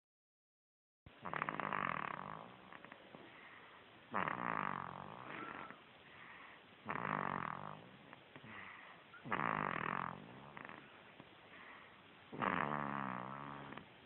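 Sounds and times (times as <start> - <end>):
baby snoring: 1.2 - 3.5, 4.1 - 5.8, 6.8 - 13.9
soft breathing: 2.7 - 4.1, 5.2 - 6.9, 7.8 - 9.3, 10.1 - 12.3.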